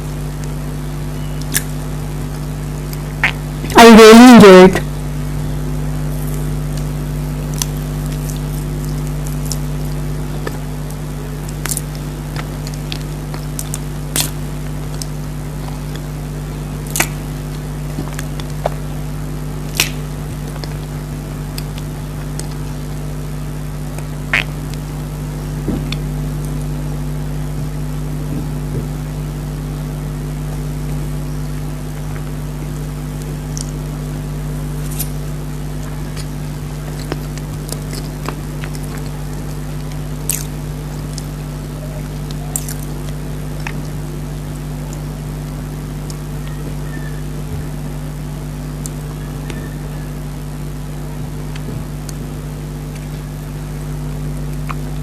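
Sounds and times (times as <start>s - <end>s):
steady low hum: 0.0s - 55.0s
mouth clicks and smacks eating: 1.4s - 4.9s, 6.3s - 16.2s, 16.8s - 18.9s, 19.7s - 22.7s, 23.9s - 24.9s, 34.8s - 44.0s, 51.2s - 52.2s, 54.4s - 55.0s.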